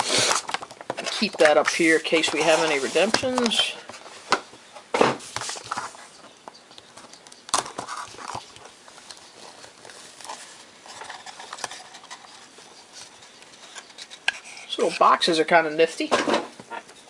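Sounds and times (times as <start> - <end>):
cardboard boxes tapping and rustling: 0.1 - 6.0.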